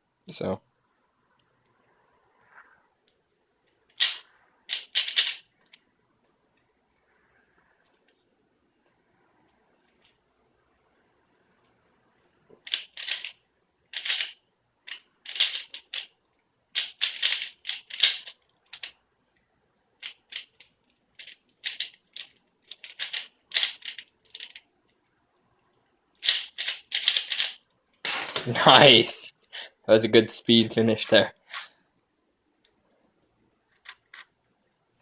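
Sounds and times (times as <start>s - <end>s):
plastic puzzle cube clicking: 4.0s - 5.8s, 12.7s - 13.4s, 14.0s - 16.1s, 16.8s - 18.9s, 20.0s - 24.6s, 26.2s - 28.6s.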